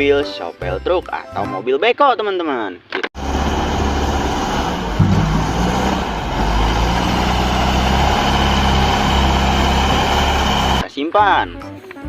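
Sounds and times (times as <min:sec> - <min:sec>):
truck engine idling: 0:03.2 - 0:10.8.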